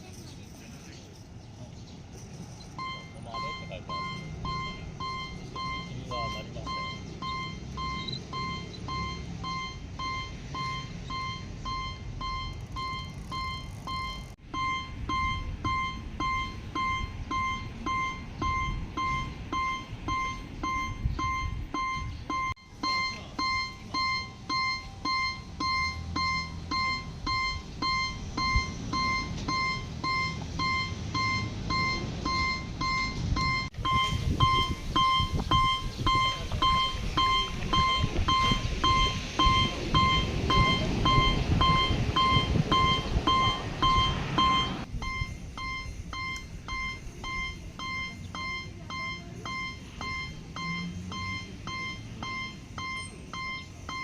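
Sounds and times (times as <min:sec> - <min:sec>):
railway crossing bell ringing: 0:02.1 - 0:54.0
higher crossing bell tone: 0:02.2 - 0:54.0
rushing rumble: 0:24.9 - 0:47.8.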